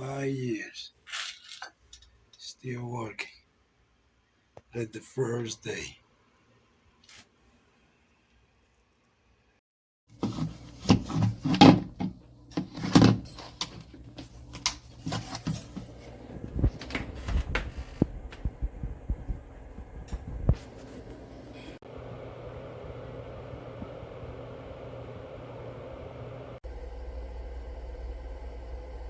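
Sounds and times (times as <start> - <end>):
handling clicks and rattles: 10.2 - 18.5
low hum: 12.2 - 29.0.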